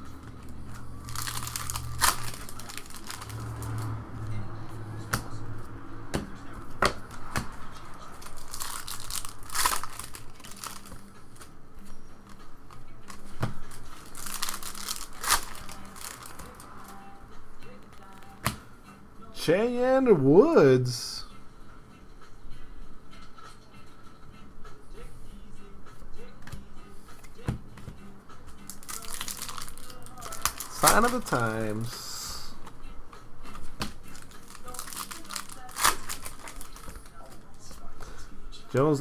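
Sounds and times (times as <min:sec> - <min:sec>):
card wrappers crinkling and tearing: 0:00.4 - 0:04.0, 0:07.0 - 0:11.5, 0:13.0 - 0:17.0, 0:28.6 - 0:32.4, 0:33.5 - 0:37.7
cards clicking: 0:28.7 - 0:31.5, 0:33.5 - 0:37.4.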